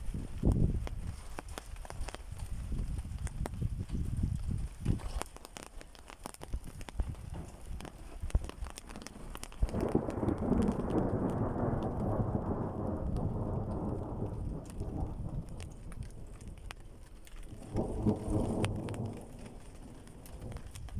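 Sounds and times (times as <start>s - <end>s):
raindrops ticking on a surface: 0.0s - 20.9s
thunder rumbling: 8.8s - 20.9s.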